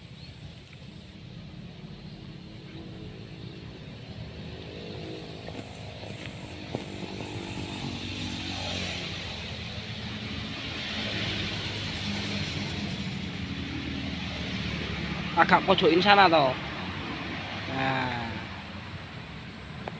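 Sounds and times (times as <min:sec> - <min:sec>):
vehicle engine running: 0:01.5 - 0:10.5.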